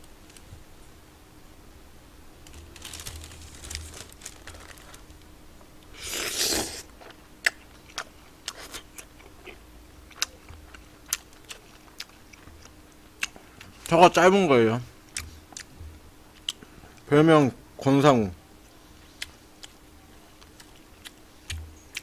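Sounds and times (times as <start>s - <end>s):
wrapper ripping: 2.4s - 5.2s
plastic wrapper crinkling: 2.4s - 5.3s.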